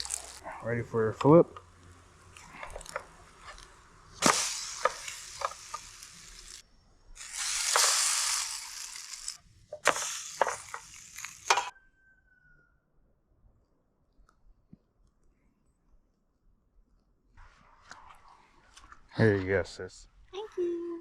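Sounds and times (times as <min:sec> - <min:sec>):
toast sizzling in a frying pan: 0:00.0 - 0:00.4, 0:02.3 - 0:06.6, 0:07.2 - 0:11.7
spatula scraping and tapping: 0:09.8 - 0:11.7.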